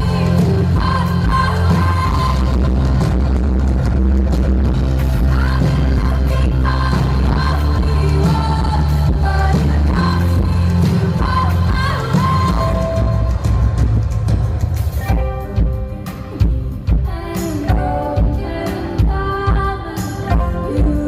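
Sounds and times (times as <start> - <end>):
woman singing: 0.0 - 2.9, 5.2 - 13.4, 16.3 - 21.0
band with heavy bass: 0.0 - 21.0.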